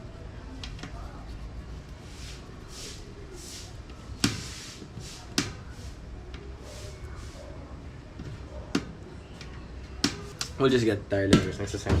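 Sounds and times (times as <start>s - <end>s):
soft rustling scrapes: 0.9s - 7.6s.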